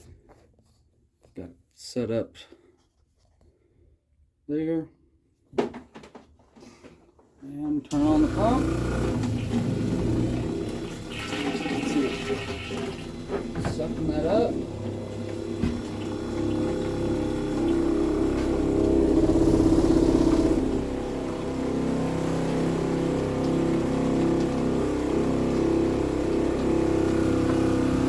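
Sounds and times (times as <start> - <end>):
small pump running: 7.9 - 28.0.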